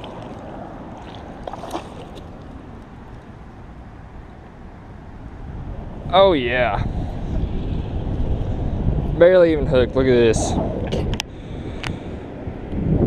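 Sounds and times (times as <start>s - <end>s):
fish splashing: 0.0s - 4.3s
creek water flowing: 0.0s - 10.4s.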